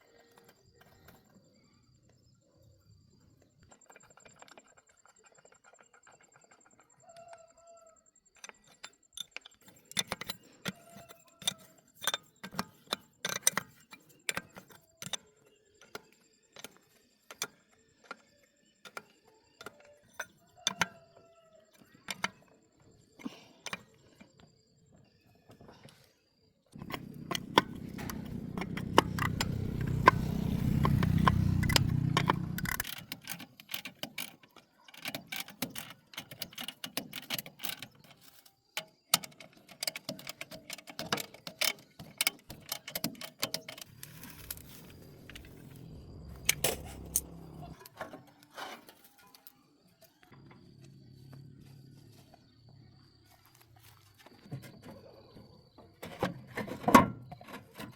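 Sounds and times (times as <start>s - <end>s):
metal tools clinking: 26.8s - 38.5s.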